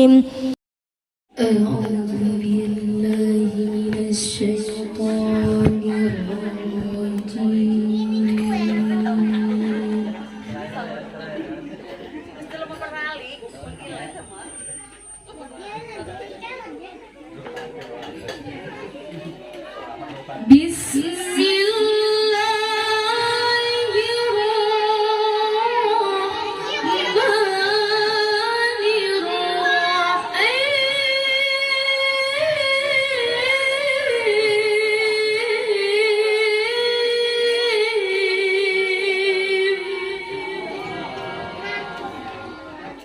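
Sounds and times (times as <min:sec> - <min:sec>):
woman reciting melodically: 0:00.0 - 0:00.6, 0:01.3 - 0:11.2, 0:20.4 - 0:42.6.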